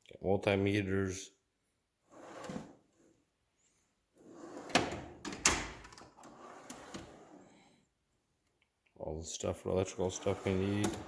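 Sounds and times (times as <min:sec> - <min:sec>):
tool box drawer rolling on slides: 0:02.1 - 0:03.1, 0:04.2 - 0:05.2, 0:06.1 - 0:07.6, 0:10.0 - 0:11.0.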